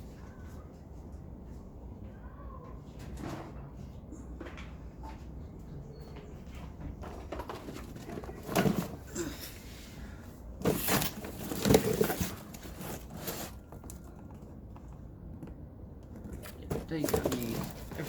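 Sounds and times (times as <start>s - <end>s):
packaging rustles and knocks: 10.6s - 18.0s.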